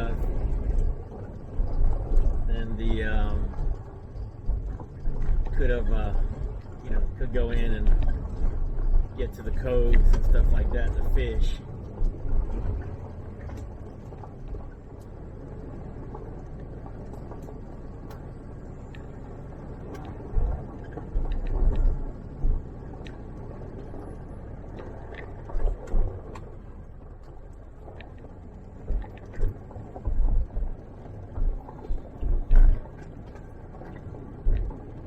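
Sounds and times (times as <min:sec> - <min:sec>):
vehicle road rumble: 0:00.0 - 0:35.0.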